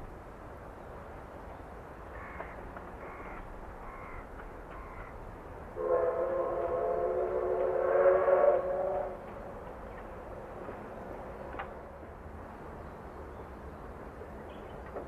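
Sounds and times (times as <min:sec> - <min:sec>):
crow cawing: 0:02.2 - 0:05.2.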